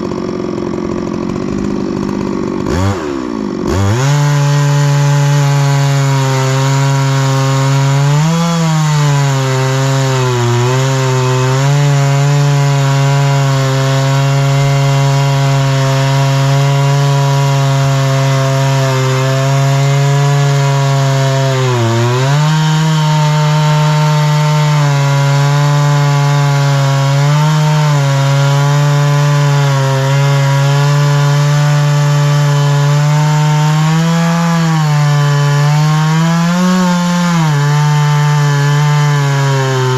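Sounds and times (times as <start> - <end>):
chainsaw engine cutting log: 0.0 - 39.9.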